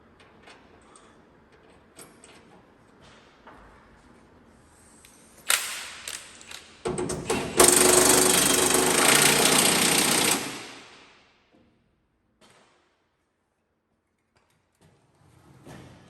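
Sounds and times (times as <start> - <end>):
power tool hammering rattle: 6.9 - 11.0.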